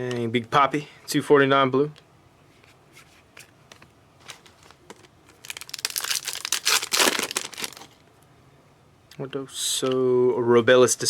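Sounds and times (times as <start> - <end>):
wrapper tearing and crinkling: 4.3 - 8.0.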